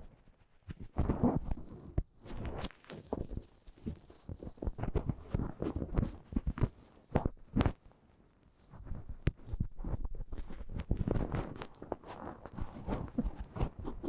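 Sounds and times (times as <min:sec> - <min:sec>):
feather brushing microphone: 0:12.6 - 0:14.0.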